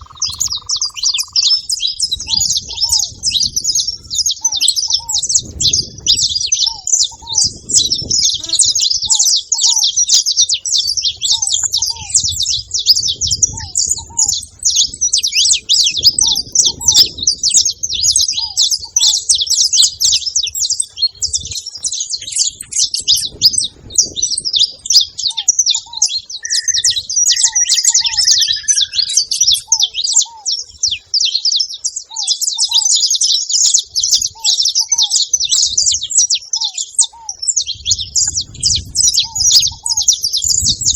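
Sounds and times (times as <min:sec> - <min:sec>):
finches chirping: 0:00.0 - 0:40.9
low short bird note: 0:26.4 - 0:29.2.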